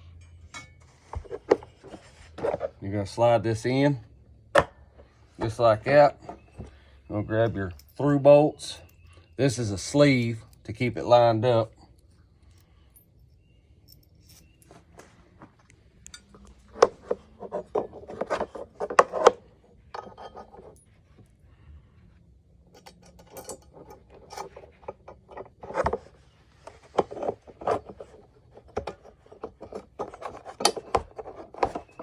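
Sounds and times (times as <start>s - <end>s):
metal hardware clicks and knocks: 16.0s - 20.9s, 22.6s - 32.0s.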